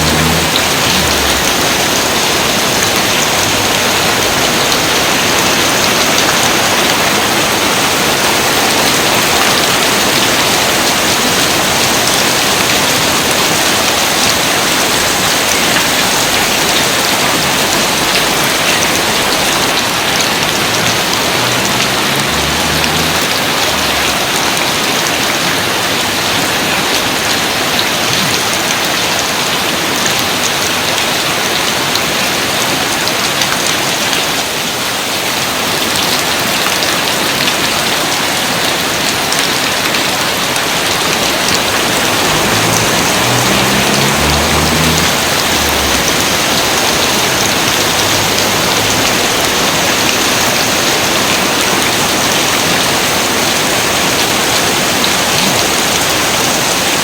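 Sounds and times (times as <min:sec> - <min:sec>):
dense rain hissing: 0:00.0 - 0:13.8, 0:17.5 - 0:26.1, 0:40.7 - 0:57.0.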